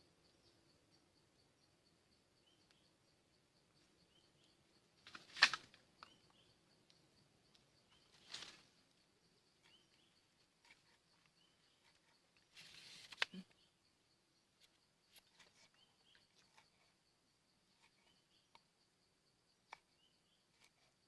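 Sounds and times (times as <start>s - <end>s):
pulsing insect trill: 0.0s - 21.0s
bird chirps: 6.0s - 6.6s, 9.5s - 13.9s, 14.6s - 16.9s.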